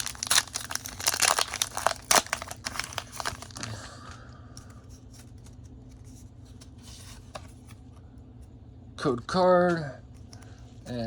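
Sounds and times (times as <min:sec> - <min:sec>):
foil wrapper crinkling and tearing: 0:00.0 - 0:03.9.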